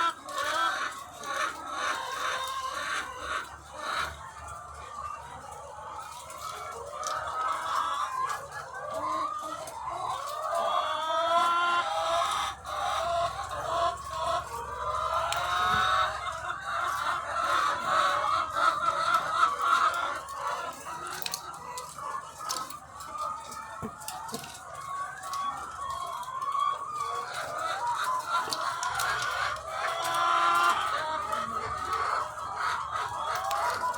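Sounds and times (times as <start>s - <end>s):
hens clucking and cackling: 0.0s - 33.9s.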